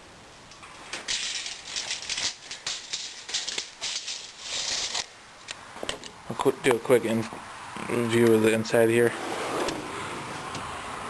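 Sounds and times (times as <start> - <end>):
hardware rattling and clicking: 0.9 - 5.1
scraping rattle: 0.9 - 5.1.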